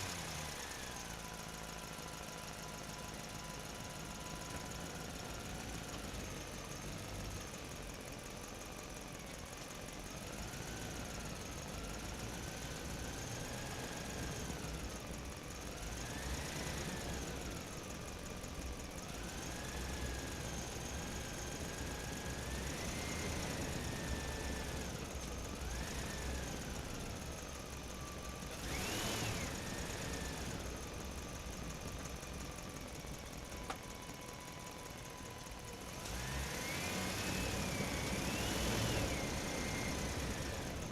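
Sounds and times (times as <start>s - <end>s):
rc truck motor whining: 9.8s - 40.9s.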